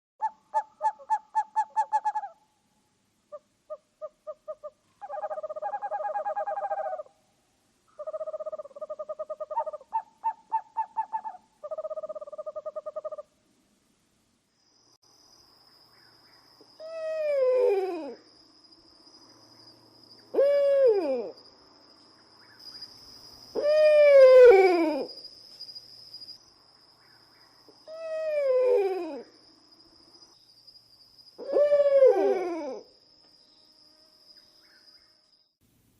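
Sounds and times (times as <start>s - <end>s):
owl calls: 0.2s - 2.4s, 3.3s - 7.2s, 7.9s - 13.3s, 23.5s - 25.2s, 27.0s - 29.4s, 31.4s - 32.9s.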